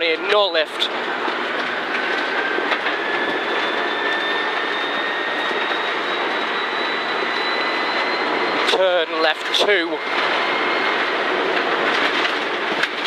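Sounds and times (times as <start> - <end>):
car engine at full throttle: 0.0 - 13.0
tyre and road noise: 8.2 - 13.0.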